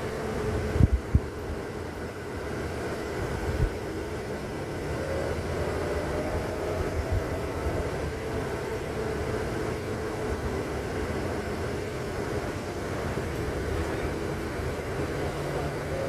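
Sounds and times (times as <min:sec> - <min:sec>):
faint engine hum: 0:00.0 - 0:16.0
vehicle rumble: 0:00.0 - 0:16.0.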